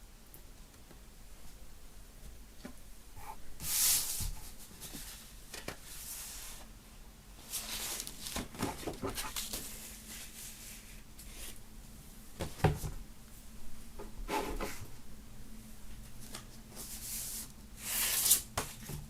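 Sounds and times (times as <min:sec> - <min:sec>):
rustling of album package: 0:07.4 - 0:10.9.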